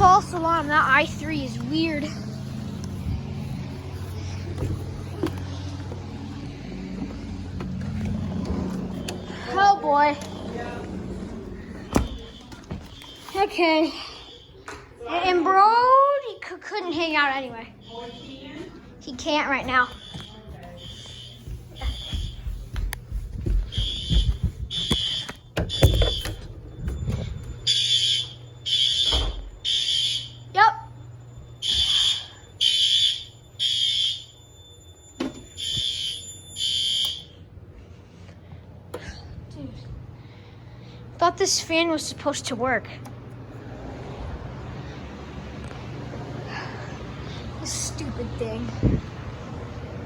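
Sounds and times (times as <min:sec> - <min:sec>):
low mechanical hum: 0:00.0 - 0:50.0
smoke alarm beeping: 0:08.0 - 0:15.0, 0:17.8 - 0:37.5
handling thumps and knocks: 0:21.6 - 0:27.4.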